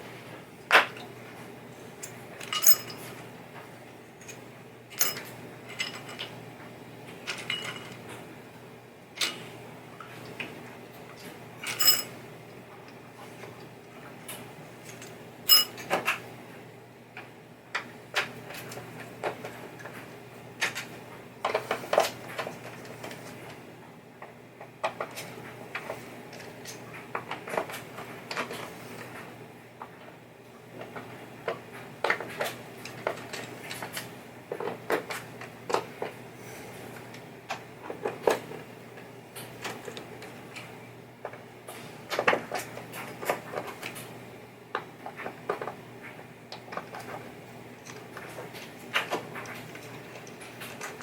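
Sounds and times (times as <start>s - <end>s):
steady low hum: 0.0s - 51.0s
metal parts and tools clinking: 2.0s - 3.1s, 4.2s - 6.2s, 11.6s - 12.1s, 15.5s - 15.8s.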